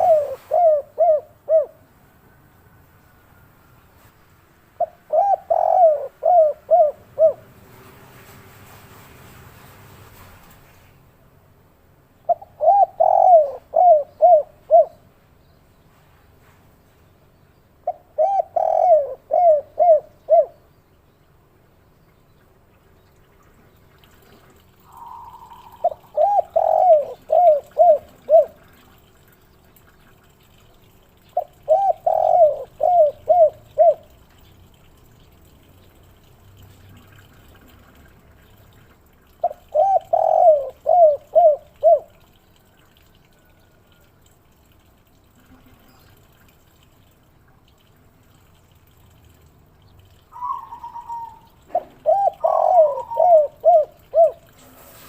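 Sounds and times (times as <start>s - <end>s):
dove cooing: 0.0s - 1.8s, 4.8s - 7.6s, 12.3s - 15.0s, 17.8s - 20.6s, 24.8s - 28.9s, 31.4s - 34.2s, 39.4s - 42.2s, 50.3s - 55.0s.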